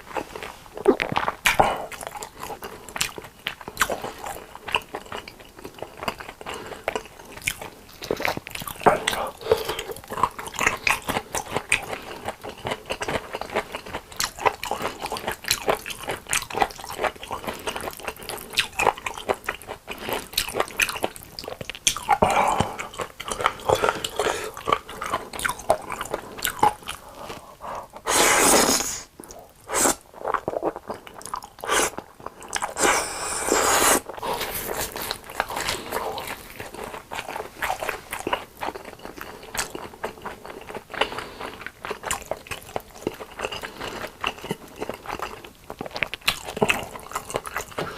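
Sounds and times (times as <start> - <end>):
crunchy biting and chewing: 0.0 - 47.9.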